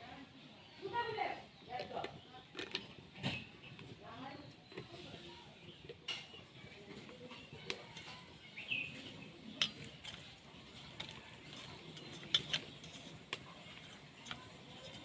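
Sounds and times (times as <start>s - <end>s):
hands mixing fish in a dish: 4.0s - 15.0s.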